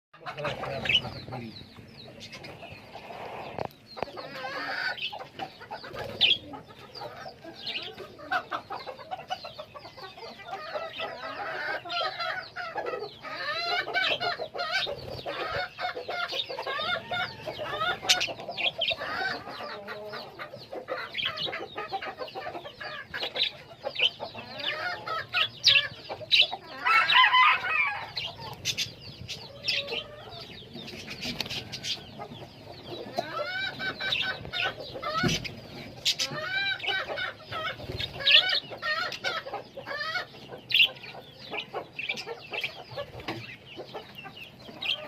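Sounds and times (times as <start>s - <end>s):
many birds calling: 0.2s - 45.0s.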